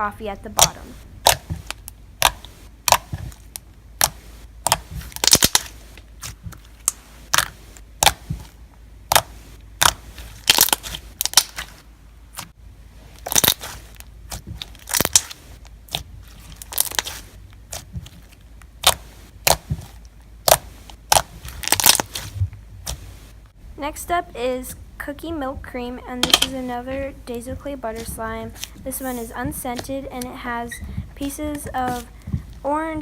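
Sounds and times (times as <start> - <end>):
slime crunching and popping: 0.6 - 8.4, 9.1 - 12.5, 13.2 - 23.0.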